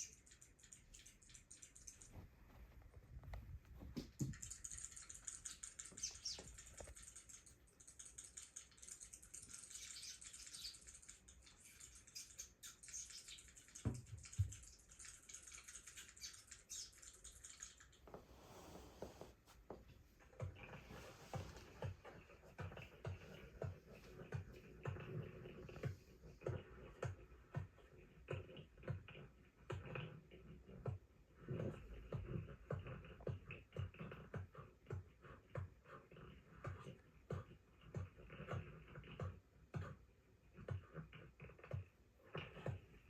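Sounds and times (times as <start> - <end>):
faint bird chirping: 0.0 - 2.7, 4.0 - 19.4
small pattering and clicking: 0.0 - 18.3, 19.6 - 43.0.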